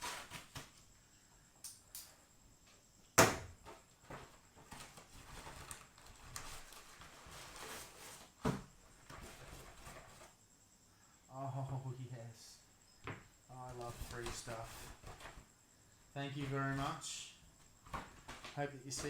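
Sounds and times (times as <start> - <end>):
packaging rustling: 4.6 - 8.4.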